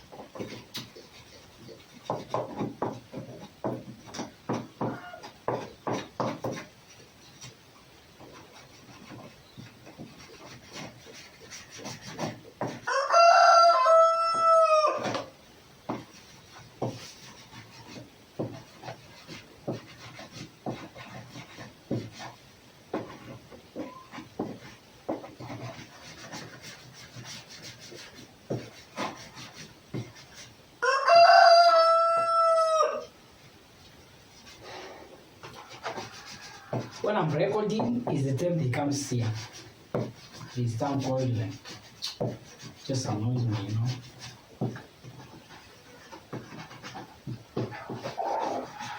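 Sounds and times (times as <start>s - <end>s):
rooster crowing: 4.8s - 5.3s, 12.8s - 15.3s, 30.8s - 33.2s, 35.6s - 37.1s, 47.7s - 48.9s
faint scraping: 34.3s - 48.9s.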